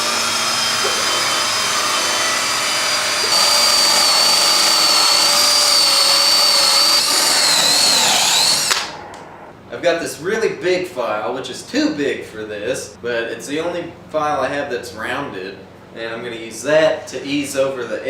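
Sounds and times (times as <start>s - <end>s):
electric drill boring into wood: 0.0s - 9.0s.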